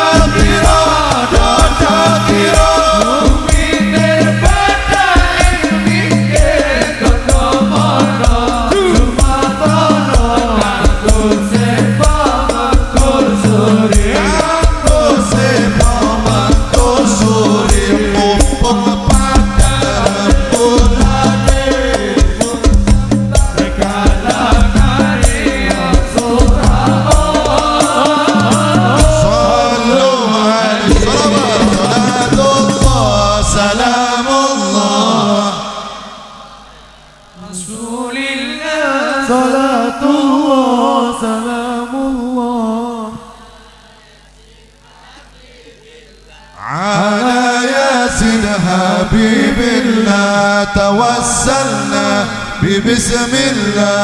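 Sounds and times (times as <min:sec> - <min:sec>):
hand drums: 0:00.0 - 0:29.9, 0:30.8 - 0:33.9
repeating bass line: 0:00.0 - 0:37.4.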